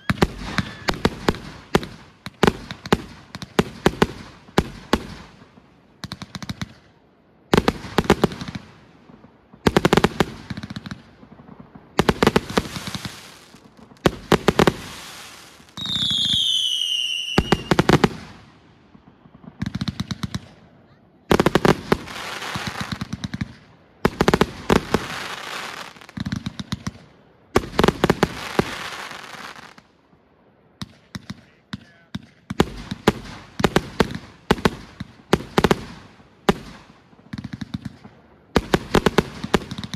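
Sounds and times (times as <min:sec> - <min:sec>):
falling firework whistle: 0:00.0 - 0:01.4, 0:14.8 - 0:18.4
firework bangs: 0:00.0 - 0:39.9.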